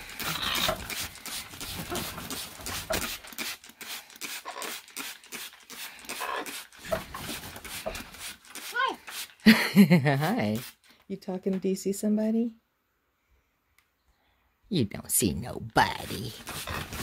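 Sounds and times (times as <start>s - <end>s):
water spraying and splashing: 0.0s - 9.4s.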